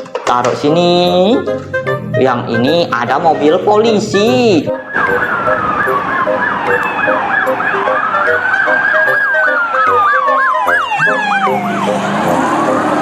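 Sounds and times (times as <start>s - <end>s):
police siren wail: 1.5s - 3.5s, 4.7s - 13.0s
police siren yelp: 4.7s - 13.0s.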